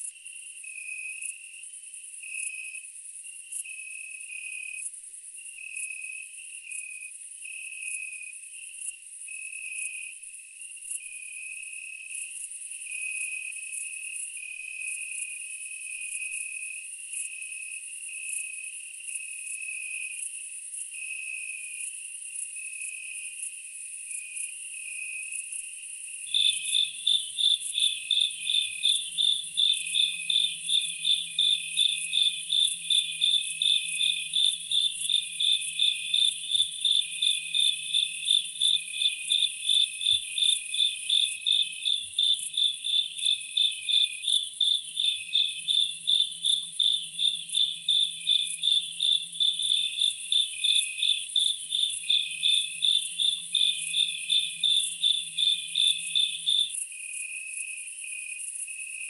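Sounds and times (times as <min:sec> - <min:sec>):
pulsing insect chirp: 0:26.3 - 0:56.8.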